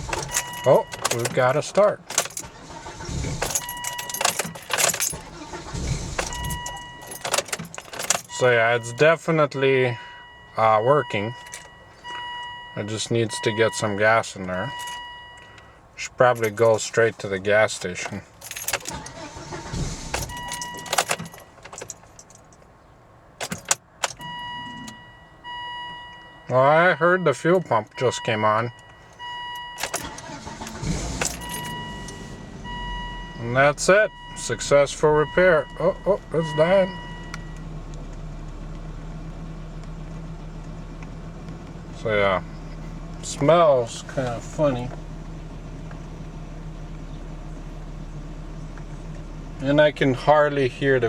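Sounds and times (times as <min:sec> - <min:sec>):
car engine catching and firing: 0:00.0 - 0:09.0, 0:17.8 - 0:22.5, 0:23.4 - 0:25.8, 0:28.9 - 0:42.0
keys jingling: 0:00.0 - 0:09.1, 0:11.3 - 0:13.9, 0:14.6 - 0:26.4, 0:27.6 - 0:38.2
dashboard warning tone: 0:00.0 - 0:17.1, 0:17.8 - 0:22.0, 0:23.4 - 0:37.8.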